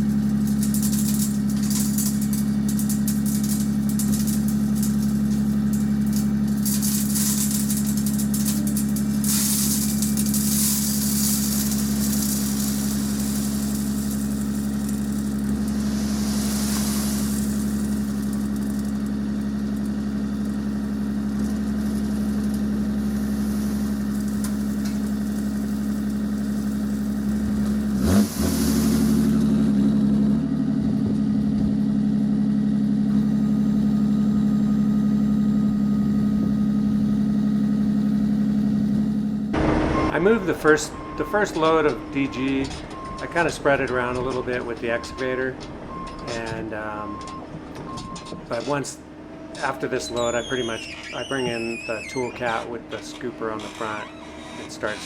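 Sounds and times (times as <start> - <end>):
heavy equipment engine running: 0.0 - 55.0
rushing noise: 39.6 - 43.2.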